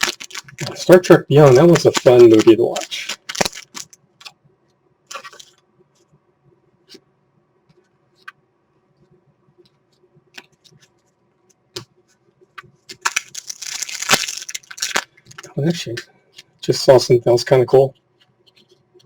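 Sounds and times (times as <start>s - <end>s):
cards rustling: 0.0s - 4.0s, 12.9s - 15.5s
card edges clicking and tapping: 1.4s - 4.0s.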